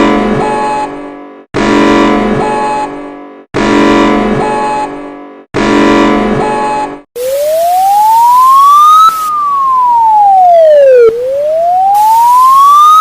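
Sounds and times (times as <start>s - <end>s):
electronic siren wailing: 6.4s - 13.0s.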